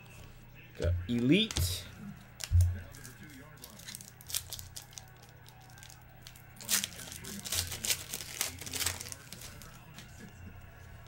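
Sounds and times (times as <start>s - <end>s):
wrapper crinkling and tearing: 2.4s - 10.0s.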